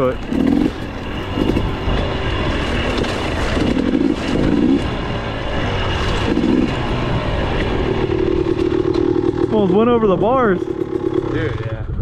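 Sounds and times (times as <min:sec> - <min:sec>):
dirt bike engines revving: 0:00.0 - 0:12.0
wind rumble on microphone: 0:00.0 - 0:12.0.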